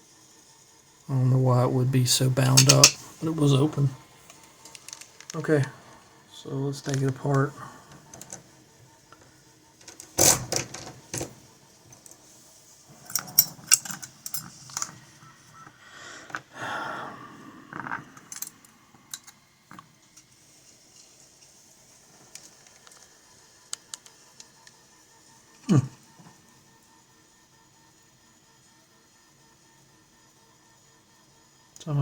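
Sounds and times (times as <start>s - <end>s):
metal lock parts clicking: 2.5s - 3.0s, 13.0s - 14.9s
metal lock parts scraping: 2.5s - 3.1s, 9.8s - 11.3s, 13.0s - 15.0s.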